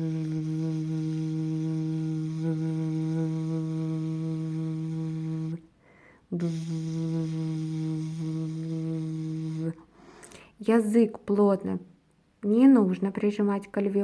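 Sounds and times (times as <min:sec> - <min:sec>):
woman humming: 0:00.0 - 0:05.6, 0:06.3 - 0:09.8
short breath: 0:05.7 - 0:06.3, 0:09.8 - 0:10.6.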